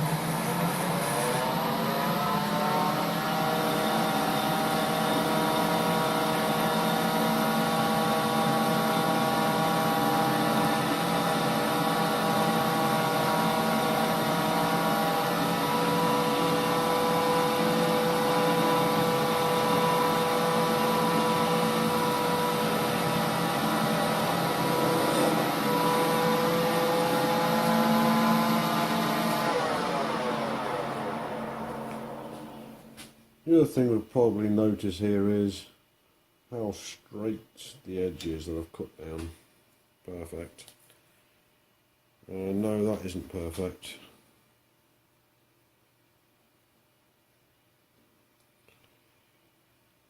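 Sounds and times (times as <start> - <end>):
lathe motor whining: 0.0 - 33.1.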